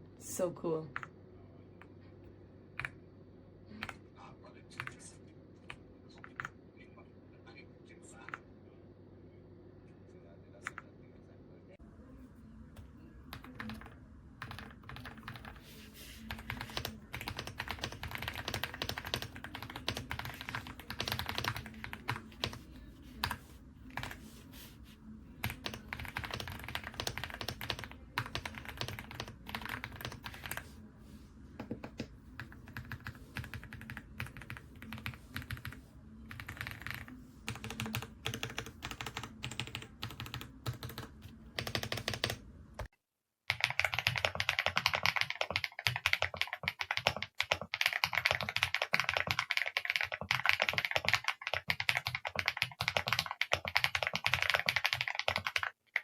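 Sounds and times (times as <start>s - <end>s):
mechanical keyboard typing: 13.3s - 15.6s, 16.3s - 22.6s, 25.4s - 30.7s, 31.6s - 42.9s, 43.5s - 56.0s.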